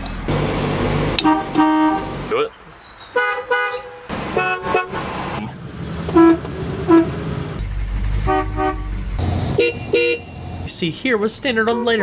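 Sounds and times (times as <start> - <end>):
car horn short toots: 1.2 - 2.2, 6.1 - 7.2, 8.2 - 8.9, 9.6 - 10.3
low rumble: 6.5 - 10.7.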